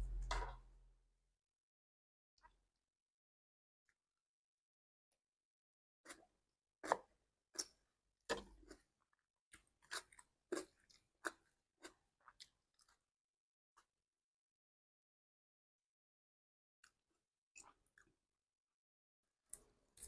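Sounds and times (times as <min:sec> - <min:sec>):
chewing crunchy food: 0:06.1 - 0:13.1.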